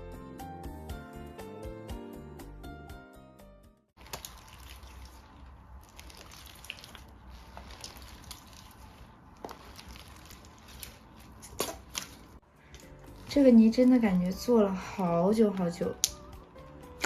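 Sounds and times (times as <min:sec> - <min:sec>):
slime popping: 0:04.0 - 0:12.4
slime squelching: 0:04.0 - 0:17.0.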